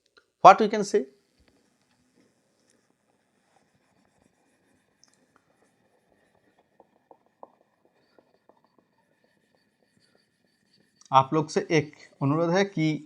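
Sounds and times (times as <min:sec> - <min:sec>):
faint writing taps and scratches: 0:01.3 - 0:11.1.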